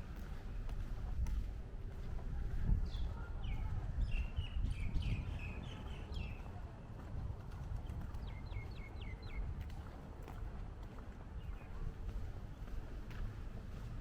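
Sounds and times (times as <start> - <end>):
small birds chirping: 2.8 - 6.7, 7.8 - 9.7.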